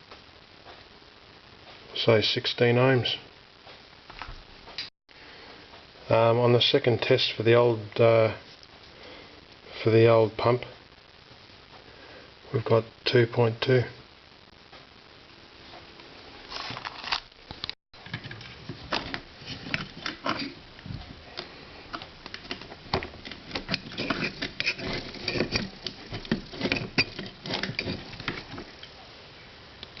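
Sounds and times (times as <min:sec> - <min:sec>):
hands handling clicks and rustles: 0:16.5 - 0:29.0.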